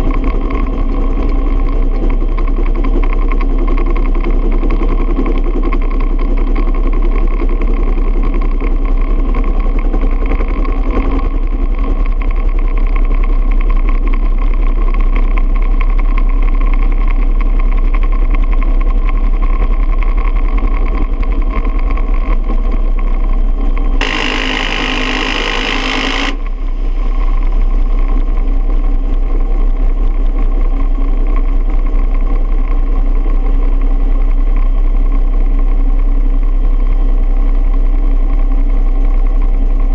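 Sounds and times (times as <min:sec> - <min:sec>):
minigun firing burst: 0:24.0 - 0:26.6
helicopter turbine and rotor: 0:24.0 - 0:28.6.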